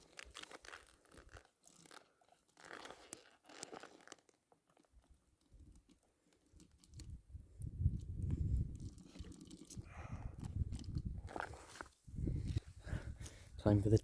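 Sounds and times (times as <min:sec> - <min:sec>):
plastic pouch crinkling: 0:00.0 - 0:04.9
wind rumble on microphone: 0:07.0 - 0:13.7.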